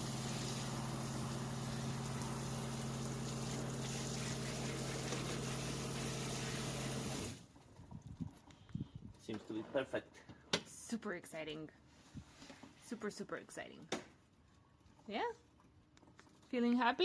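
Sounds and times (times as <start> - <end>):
water pump humming: 0.0 - 7.4
water running from tap: 0.0 - 7.4.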